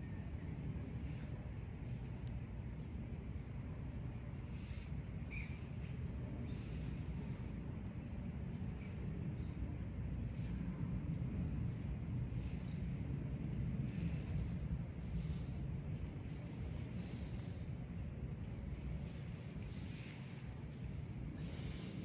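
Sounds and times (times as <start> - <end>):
low outdoor rumble: 0.0 - 22.0
birds chirping: 11.6 - 22.0.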